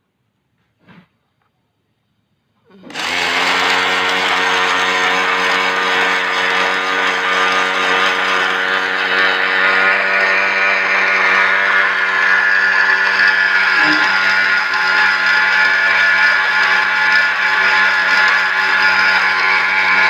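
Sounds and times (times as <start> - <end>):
machinery whine: 2.7 - 20.0.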